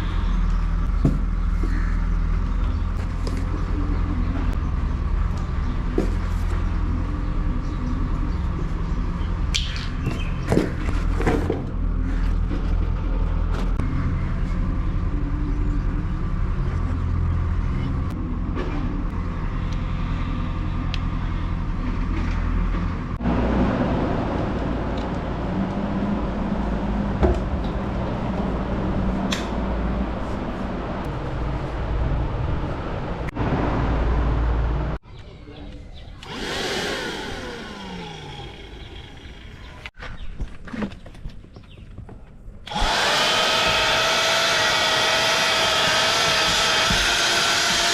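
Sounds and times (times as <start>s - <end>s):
handheld vacuum cleaner running: 36.2s - 39.4s, 42.7s - 47.9s.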